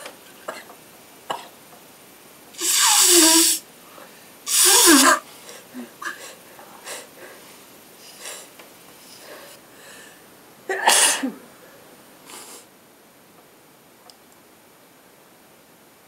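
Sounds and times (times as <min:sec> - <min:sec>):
person sneezing: 0:02.6 - 0:03.6, 0:04.5 - 0:07.1, 0:10.7 - 0:11.4
faint breaths: 0:03.8 - 0:04.5, 0:05.2 - 0:10.4.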